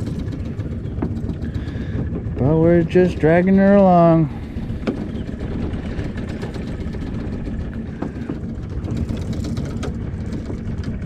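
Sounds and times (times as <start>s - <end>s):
boat motor running: 0.0s - 11.0s.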